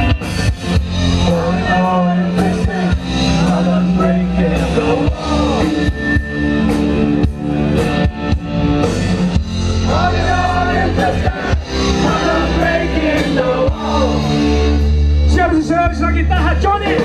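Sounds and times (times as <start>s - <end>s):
live rock band playing: 0.0s - 17.0s
person singing: 1.1s - 5.9s, 9.8s - 14.5s.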